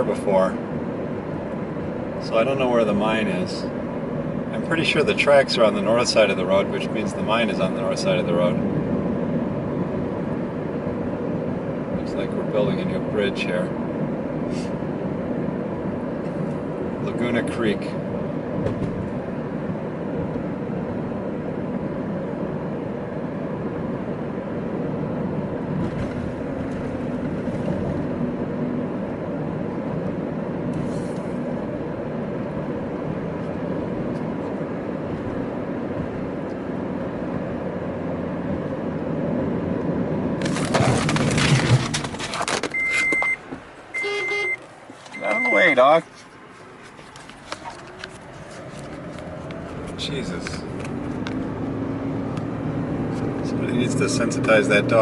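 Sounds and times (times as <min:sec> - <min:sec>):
car engine and road noise: 0:00.0 - 0:55.0
short high beep: 0:42.8 - 0:43.4, 0:44.0 - 0:45.8.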